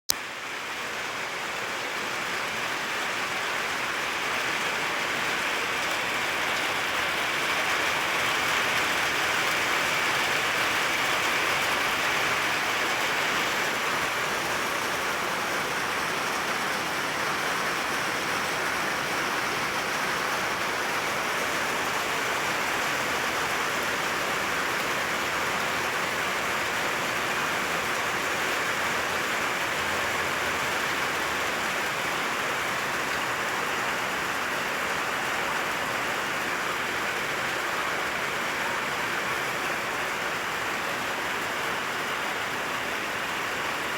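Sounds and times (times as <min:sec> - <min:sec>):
steady rain falling: 0:00.1 - 0:43.9.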